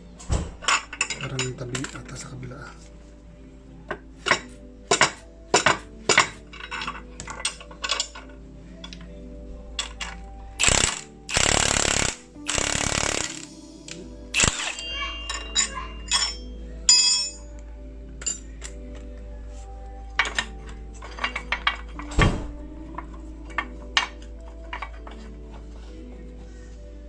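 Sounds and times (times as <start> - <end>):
metal tools clinking on metal: 0.6 - 2.4, 3.9 - 9.1, 9.8 - 13.3, 13.9 - 17.6, 18.2 - 19.1, 20.1 - 25.6.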